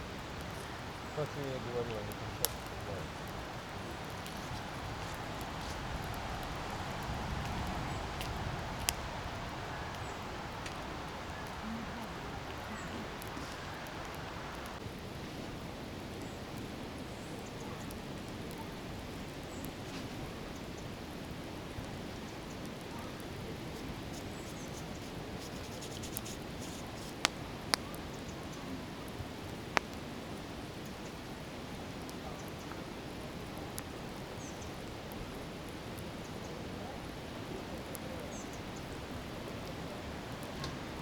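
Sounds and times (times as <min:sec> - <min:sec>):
river rushing: 0:00.0 - 0:14.8
sharp cracks: 0:00.4 - 0:09.3.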